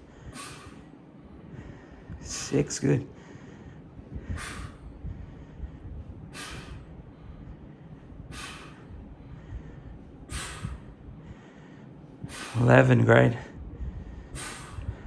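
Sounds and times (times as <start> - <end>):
person exhaling forcefully: 0.2 - 0.9, 4.2 - 4.9, 6.3 - 6.9, 8.3 - 8.9, 10.3 - 10.9, 12.3 - 12.6, 14.3 - 15.0.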